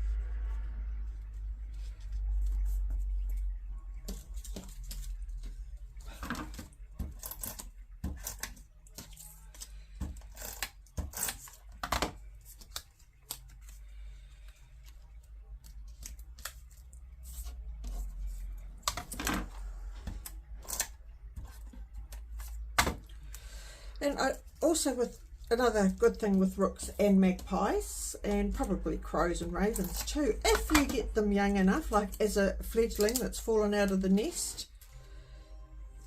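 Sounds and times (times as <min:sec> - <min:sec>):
steady low hum: 0:00.0 - 0:07.2
paper rustling: 0:01.2 - 0:07.8.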